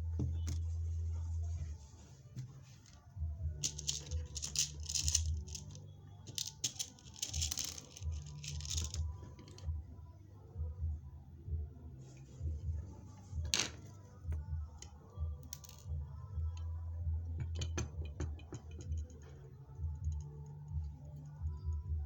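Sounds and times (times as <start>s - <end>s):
rivet machine rustling and clicking: 3.6s - 9.6s.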